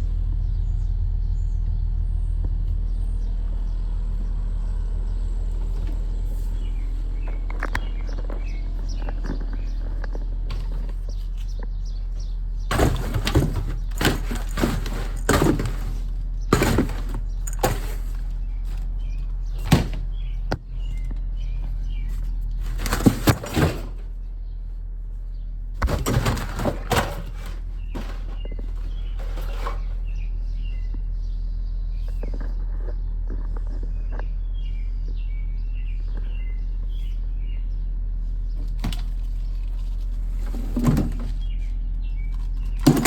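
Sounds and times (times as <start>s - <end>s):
steady low hum: 0.0s - 43.0s
bangs and rattles: 12.2s - 21.0s, 22.2s - 24.1s, 25.8s - 30.1s, 40.3s - 41.7s, 42.3s - 43.0s.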